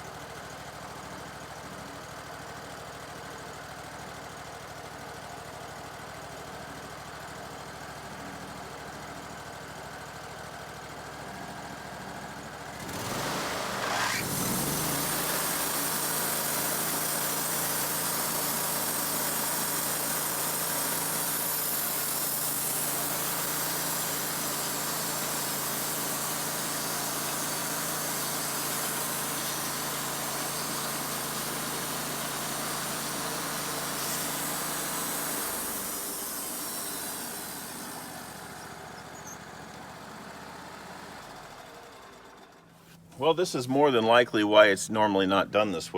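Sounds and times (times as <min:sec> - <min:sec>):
sawmill engine running: 0:00.2 - 0:45.9
band saw cutting wood: 0:12.8 - 0:39.6.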